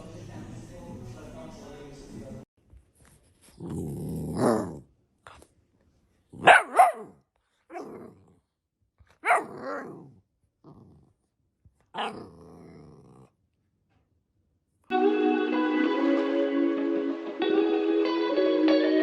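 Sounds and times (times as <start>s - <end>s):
dog barking: 6.4s - 8.1s, 9.1s - 10.1s, 11.9s - 12.3s.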